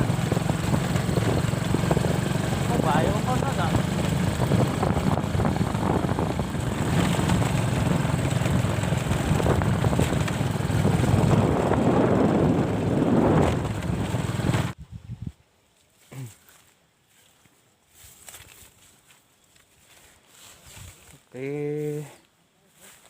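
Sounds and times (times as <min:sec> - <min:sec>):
vehicle engine running: 0:00.0 - 0:14.8
wind buffeting microphone: 0:00.0 - 0:15.4.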